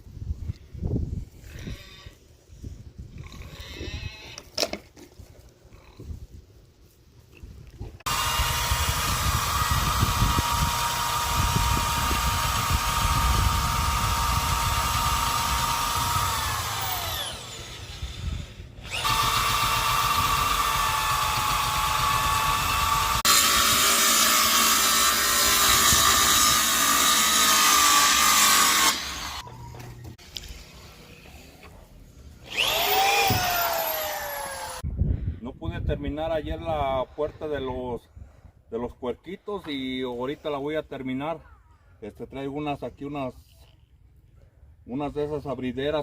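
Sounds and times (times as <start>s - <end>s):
power tool whining on wood: 8.0s - 29.5s, 32.4s - 34.8s.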